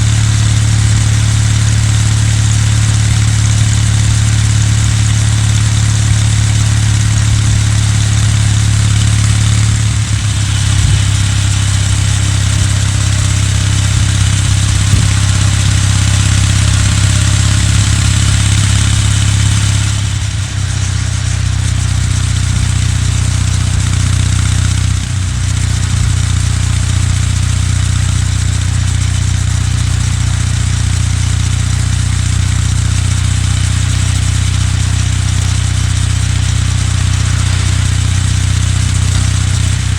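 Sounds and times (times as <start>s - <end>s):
motorcycle engine running: 0.0s - 39.9s
wind and road noise: 4.8s - 26.4s.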